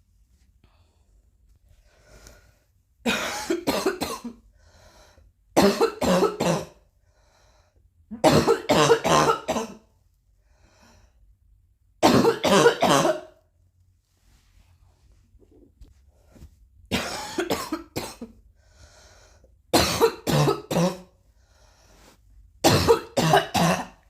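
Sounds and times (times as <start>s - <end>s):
faint breathing: 0.6s - 2.8s, 4.5s - 5.3s, 7.0s - 7.8s, 10.4s - 11.3s, 18.6s - 19.6s, 21.3s - 22.3s
person coughing: 3.1s - 4.4s, 5.6s - 6.8s, 8.1s - 9.8s, 12.0s - 13.4s, 16.9s - 18.4s, 19.8s - 21.1s, 22.6s - 24.0s.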